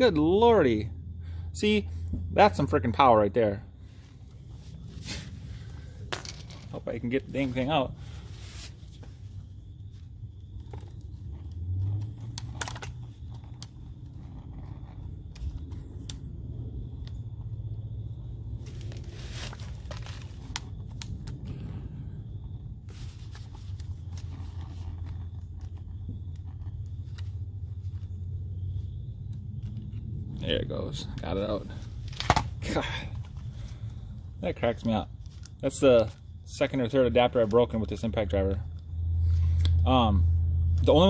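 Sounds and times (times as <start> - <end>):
small metal clicks and scrapes: 10.6 - 16.2.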